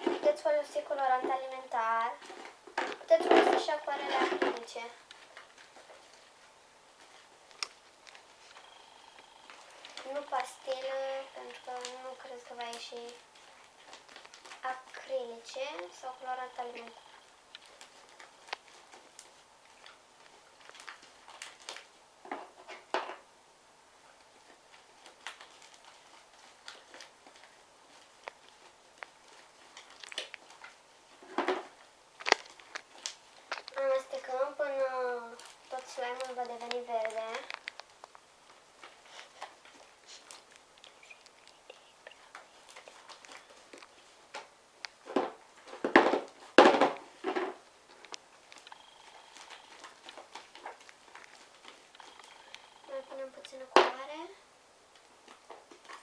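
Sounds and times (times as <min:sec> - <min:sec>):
sticky slime clicks and crackles: 0:28.2 - 0:30.8, 0:32.2 - 0:34.0.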